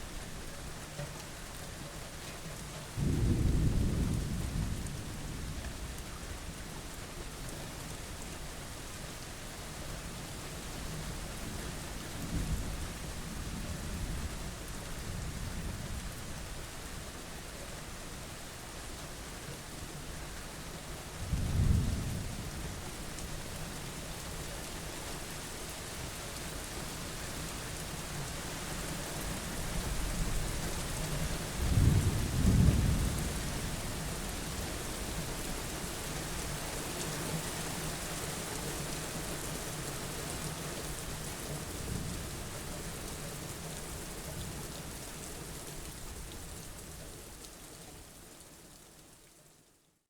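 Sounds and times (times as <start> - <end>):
steady rain: 0.0 - 50.0
rolling thunder: 3.0 - 5.4, 31.6 - 33.5.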